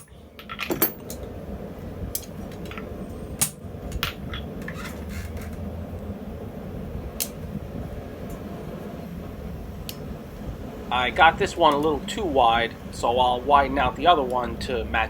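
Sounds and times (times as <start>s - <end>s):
metal tools clinking: 0.0s - 1.2s
steady low hum: 0.0s - 15.0s.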